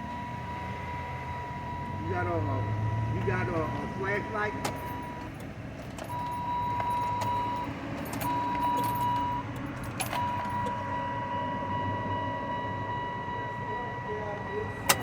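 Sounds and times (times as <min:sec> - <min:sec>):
electronic warning tone: 0:00.0 - 0:05.4, 0:06.1 - 0:15.0
keys jingling: 0:04.4 - 0:10.8.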